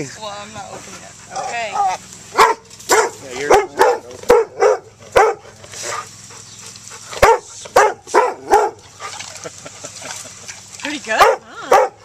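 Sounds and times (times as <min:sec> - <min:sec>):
dog barking sharply: 0:01.4 - 0:06.0, 0:07.1 - 0:08.8, 0:11.2 - 0:12.0.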